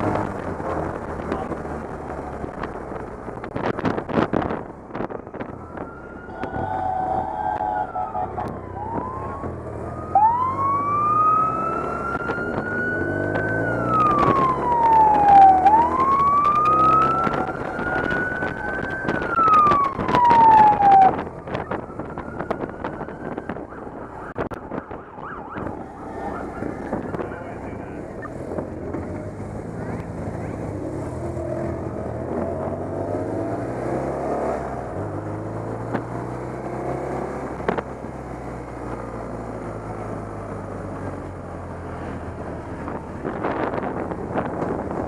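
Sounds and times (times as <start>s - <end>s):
motorcycle engines running: 0.0s - 6.2s, 7.3s - 33.0s
police sirens wailing: 5.0s - 36.0s.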